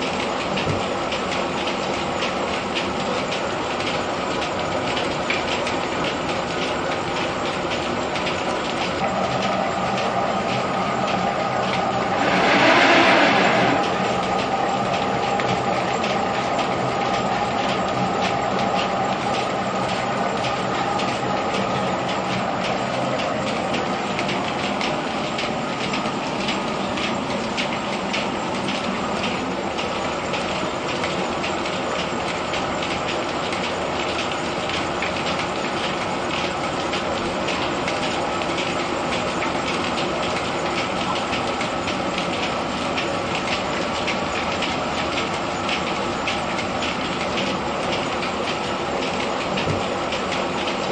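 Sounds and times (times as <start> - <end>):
threshing machine rattling: 7.3 - 16.8
rushing of poured grain: 12.0 - 14.0.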